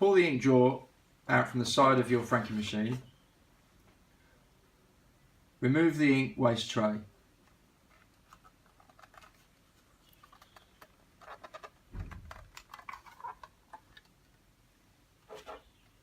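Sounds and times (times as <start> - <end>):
plastic clicks and rattles: 7.9 - 14.4.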